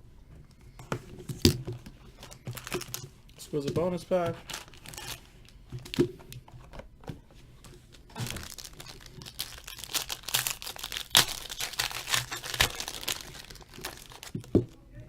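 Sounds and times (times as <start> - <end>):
foil wrappers crinkling and tearing: 2.1 - 3.1, 4.4 - 5.6, 8.0 - 14.8.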